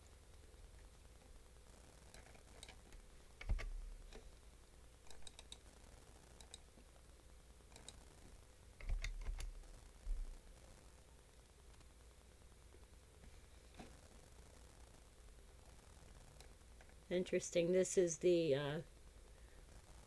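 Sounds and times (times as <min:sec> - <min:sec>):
keyboard keystrokes and clicks: 0:02.1 - 0:04.2, 0:05.1 - 0:05.6, 0:06.4 - 0:06.7, 0:07.7 - 0:08.0, 0:08.8 - 0:10.3.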